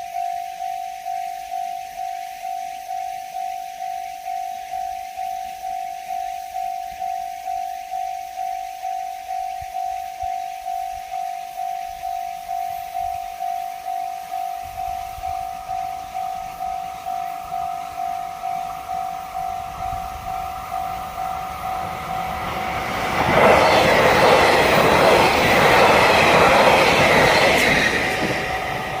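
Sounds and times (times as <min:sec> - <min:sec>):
level crossing warning bell: 0:00.0 - 0:29.0
train passing loudly: 0:14.6 - 0:29.0.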